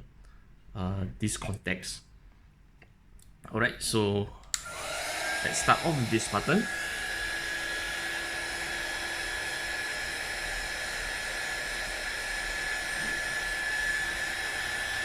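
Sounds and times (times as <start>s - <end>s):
hot air gun blowing with whine: 4.6s - 15.0s.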